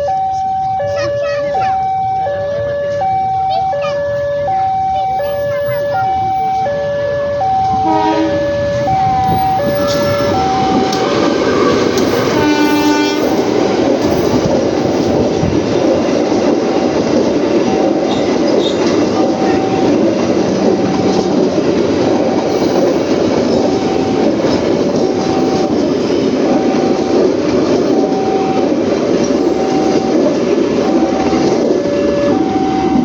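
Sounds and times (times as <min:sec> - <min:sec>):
electronic warning beeps: 0:00.0 - 0:11.1, 0:17.6 - 0:20.1, 0:20.8 - 0:21.4, 0:26.5 - 0:33.0
train passing rumble: 0:00.0 - 0:33.0
locomotive air horn: 0:06.7 - 0:10.8, 0:12.4 - 0:13.5
wheels clattering over rail joints: 0:08.7 - 0:31.9.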